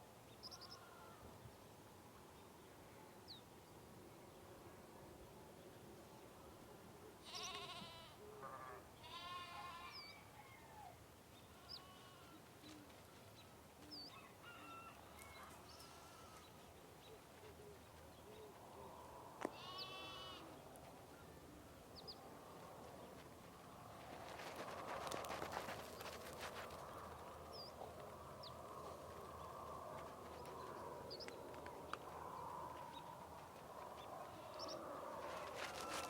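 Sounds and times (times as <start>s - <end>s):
sheep bleating: 7.2s - 10.1s, 11.6s - 12.4s, 15.7s - 16.5s, 19.4s - 20.6s.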